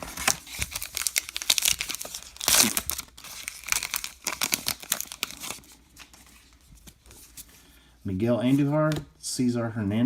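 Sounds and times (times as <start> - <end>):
wrapper crinkling and tearing: 0.0 - 7.0.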